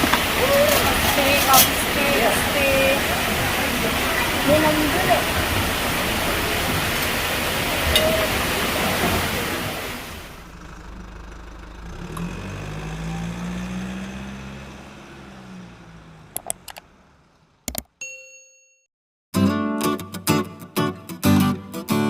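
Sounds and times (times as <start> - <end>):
loud steady rushing noise: 0.0 - 10.4
vehicle engine humming: 0.0 - 17.7
sharp clicks: 16.4 - 16.8, 17.7 - 17.9.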